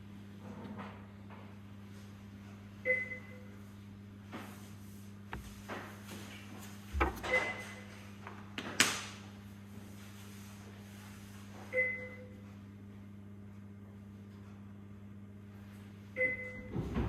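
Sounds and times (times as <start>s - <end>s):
low electrical hum: 0.0s - 17.0s
handling clicks and knocks: 7.0s - 7.5s.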